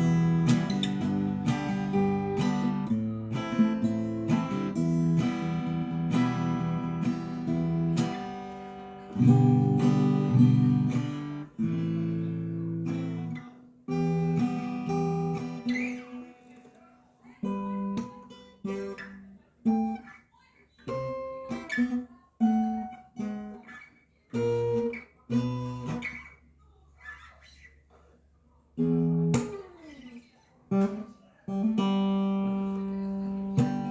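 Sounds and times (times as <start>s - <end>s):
percussive fingerstyle acoustic guitar: 0.0s - 16.8s, 17.4s - 28.2s, 28.8s - 33.9s.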